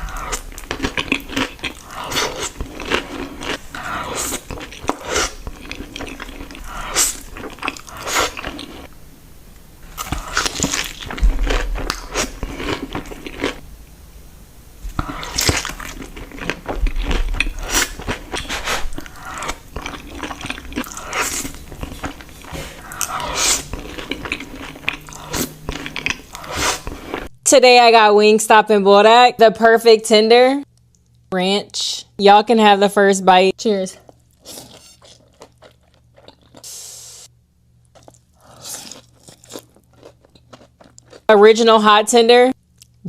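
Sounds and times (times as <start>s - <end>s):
crunchy bites and chewing: 0.0s - 8.9s, 9.8s - 13.6s, 14.9s - 27.3s, 34.0s - 36.7s, 37.8s - 41.3s.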